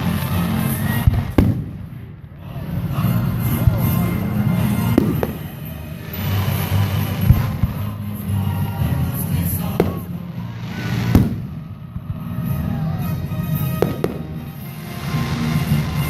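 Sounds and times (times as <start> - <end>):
fireworks exploding: 0.0 - 16.0.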